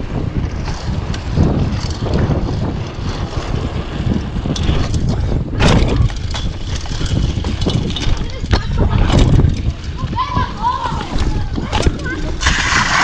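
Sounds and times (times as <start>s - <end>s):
wind buffeting microphone: 0.0s - 13.0s
rattles and clicks: 4.1s - 10.2s.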